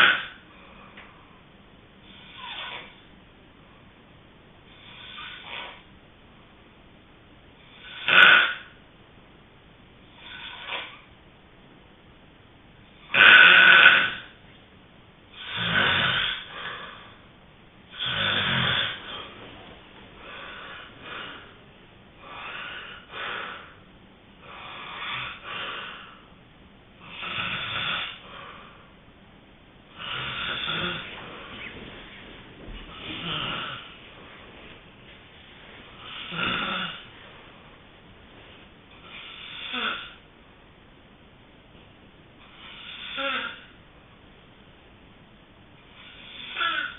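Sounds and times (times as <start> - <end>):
person snoring: 15.3 - 17.1, 17.9 - 19.3, 27.0 - 28.8, 29.9 - 31.7, 32.9 - 34.0, 36.0 - 37.1, 39.0 - 40.2, 42.6 - 43.7, 46.0 - 46.9.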